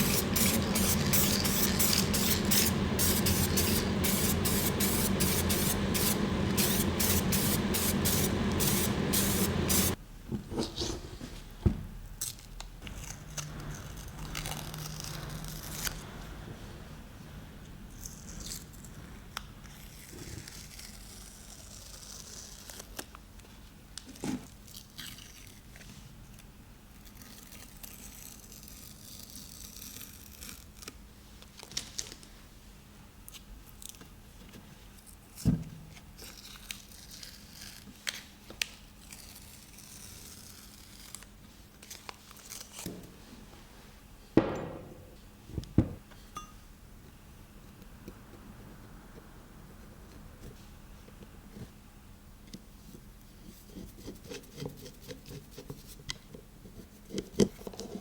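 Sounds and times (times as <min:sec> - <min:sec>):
sharp knocks: 0:44.4 - 0:45.2.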